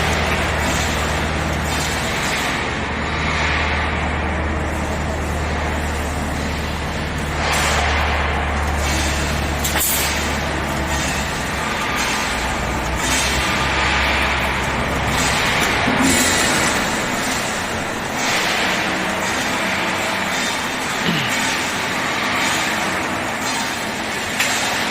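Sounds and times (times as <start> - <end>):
welding machine humming: 0.0 - 24.9.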